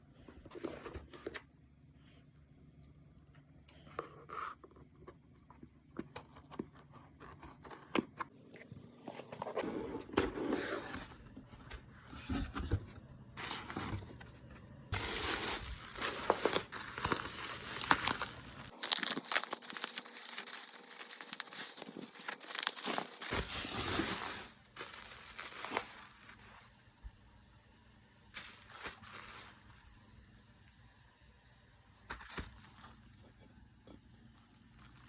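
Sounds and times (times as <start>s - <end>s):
wrapping crinkling and tearing: 15.0s - 26.7s, 34.4s - 35.0s.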